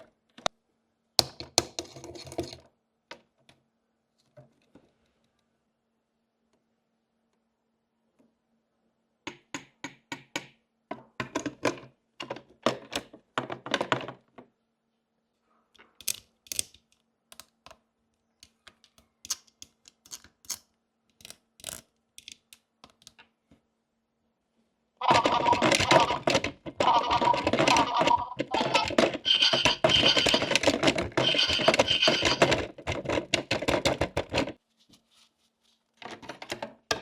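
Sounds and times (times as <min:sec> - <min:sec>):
toy pieces clicking and tapping: 0:18.4 - 0:23.2, 0:25.0 - 0:34.5.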